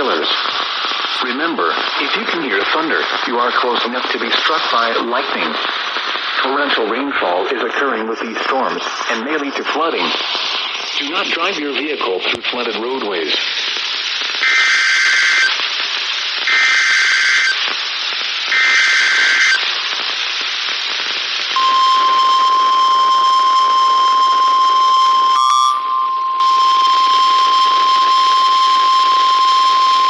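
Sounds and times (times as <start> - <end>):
radio static hiss: 0.0 - 25.7, 26.4 - 30.0
digital data bursts: 13.4 - 30.0
warning alarm tone: 14.4 - 15.5, 16.5 - 17.6, 18.5 - 19.6, 21.6 - 30.0.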